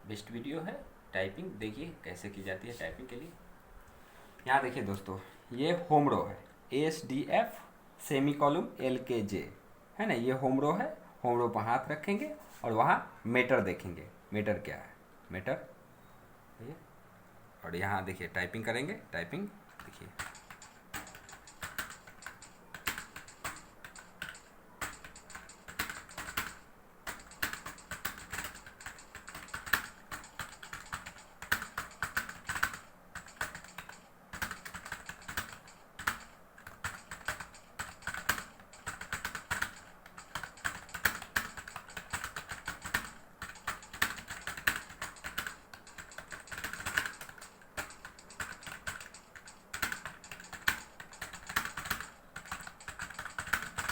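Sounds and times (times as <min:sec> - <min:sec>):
fast typing on keyboard: 0:19.7 - 0:53.9.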